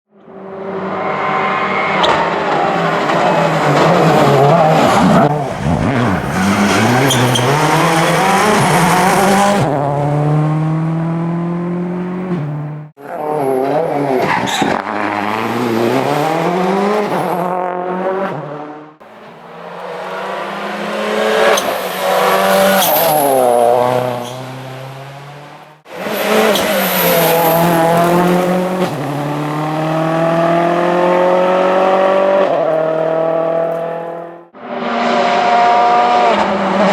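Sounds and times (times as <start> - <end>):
rally car engine revving: 0.4 - 36.9
tyre squeal: 4.8 - 9.1, 13.7 - 14.9, 19.5 - 24.8, 26.1 - 29.3.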